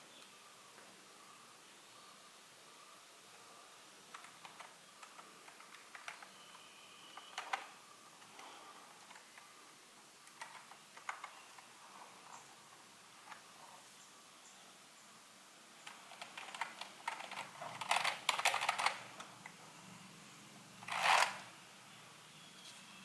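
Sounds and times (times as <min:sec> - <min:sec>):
keyboard keys clicking: 0:04.1 - 0:06.4, 0:07.2 - 0:08.5, 0:15.9 - 0:19.6.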